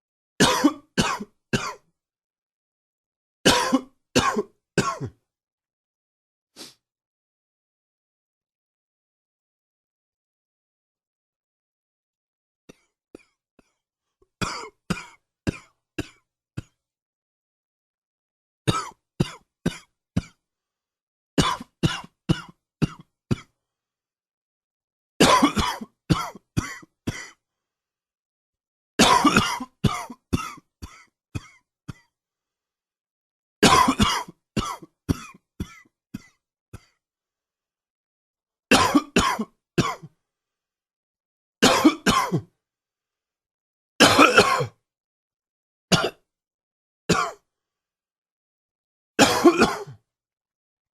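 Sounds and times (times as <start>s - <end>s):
man coughing: 0.4s - 1.8s, 3.5s - 5.1s, 14.4s - 16.7s, 25.2s - 27.3s, 29.0s - 32.0s, 33.6s - 36.3s, 38.7s - 40.0s, 41.6s - 42.5s, 44.0s - 44.8s, 47.1s - 47.4s, 49.2s - 50.0s.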